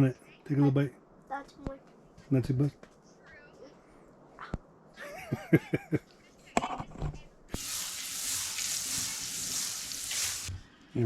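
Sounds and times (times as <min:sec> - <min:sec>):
food sizzling on a skillet: 0:07.6 - 0:10.6.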